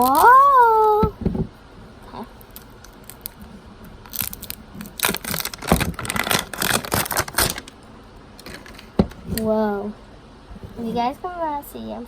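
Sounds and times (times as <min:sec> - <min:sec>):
plastic wrapping crinkling and tearing: 0:00.0 - 0:01.0, 0:02.4 - 0:07.8.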